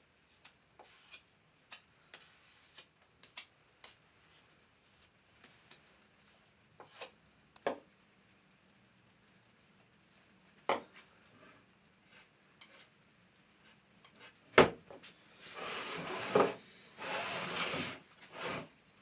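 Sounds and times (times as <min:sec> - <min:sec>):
hand-sanding wood: 0:15.5 - 0:18.7.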